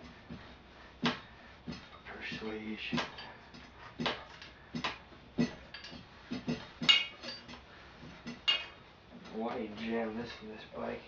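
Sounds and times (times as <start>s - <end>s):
tools knocking on metal: 1.0s - 9.3s.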